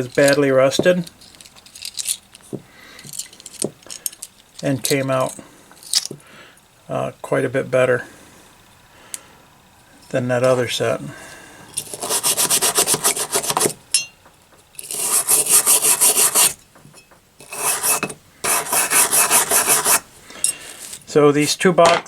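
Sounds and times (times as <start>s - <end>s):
rapid hand scrubbing strokes: 11.9s - 13.8s, 14.9s - 16.6s, 17.5s - 20.1s.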